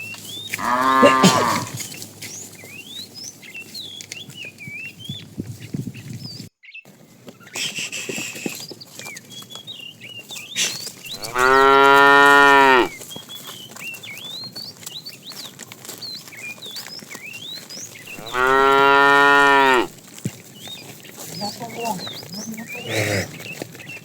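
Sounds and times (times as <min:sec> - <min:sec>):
cow mooing: 0:00.6 - 0:01.8, 0:11.2 - 0:13.0, 0:18.1 - 0:19.9.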